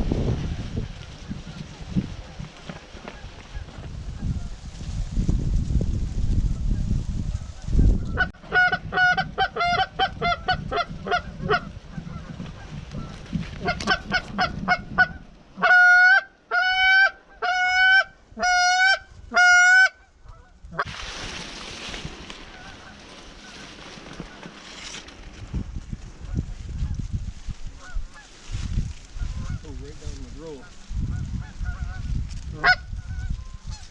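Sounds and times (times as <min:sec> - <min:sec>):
geese honking: 0:02.6 - 0:04.5, 0:08.1 - 0:20.9, 0:22.3 - 0:24.8, 0:27.7 - 0:28.5, 0:29.1 - 0:33.9.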